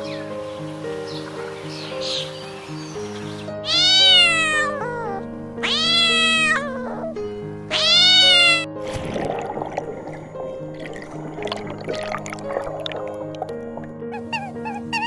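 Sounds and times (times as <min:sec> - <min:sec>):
background music: 0:00.0 - 0:15.0
cat meowing: 0:03.6 - 0:08.7, 0:14.1 - 0:15.0.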